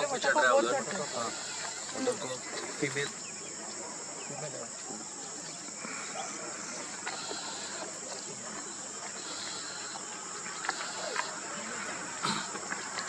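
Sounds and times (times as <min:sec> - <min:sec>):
crickets droning: 0:00.0 - 0:13.0.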